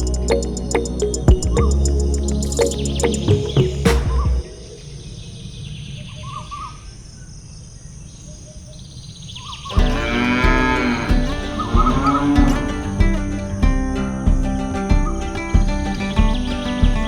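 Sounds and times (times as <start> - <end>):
cow mooing loudly: 9.8 - 13.0.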